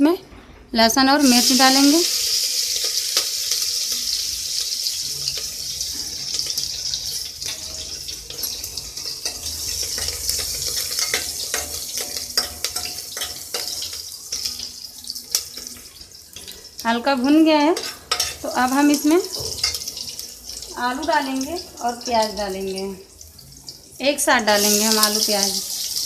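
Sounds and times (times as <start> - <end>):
food sizzling in hot oil: 1.2 - 26.0
spoon scraping against pot: 5.1 - 16.6, 17.7 - 20.4.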